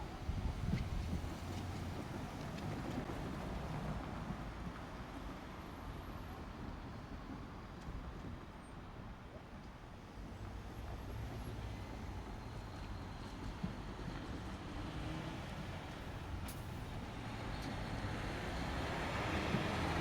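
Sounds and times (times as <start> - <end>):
diesel railcar engines droning: 10.8 - 20.0.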